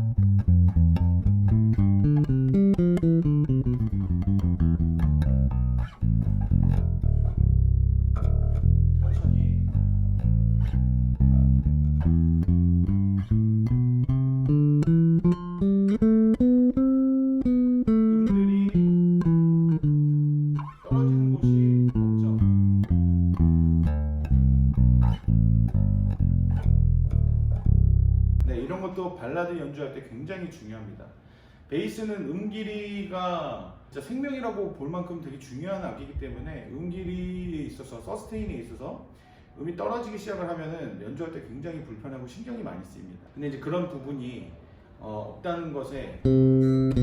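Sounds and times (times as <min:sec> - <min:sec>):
electric bass scale runs: 0:00.0 - 0:28.5.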